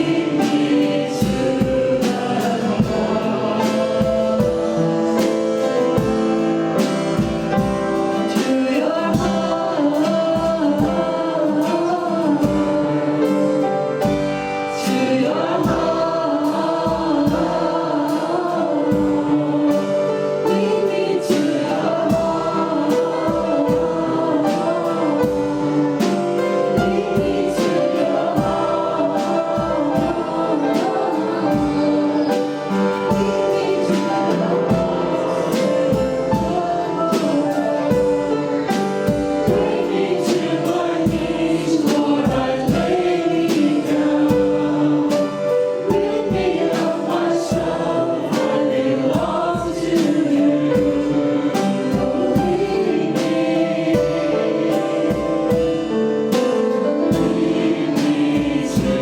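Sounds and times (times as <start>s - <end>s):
band with drums: 0.0s - 59.0s
group singing gospel song: 0.0s - 59.0s.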